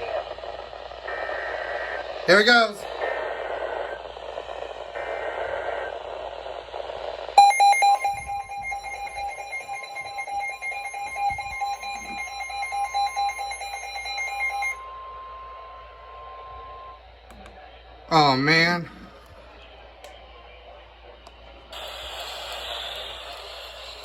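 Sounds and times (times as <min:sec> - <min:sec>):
radio hiss: 0:00.0 - 0:10.4, 0:14.7 - 0:24.0
pulsing two-tone alert signal: 0:07.4 - 0:14.8.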